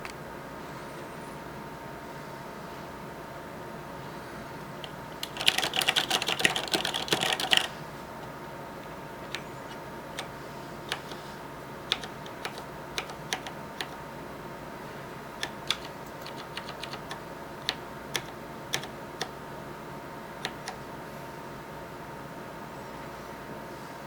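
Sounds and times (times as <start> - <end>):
faint steady hum: 0.0 - 24.0
mechanical keyboard key clicks: 11.9 - 14.0, 15.4 - 19.3.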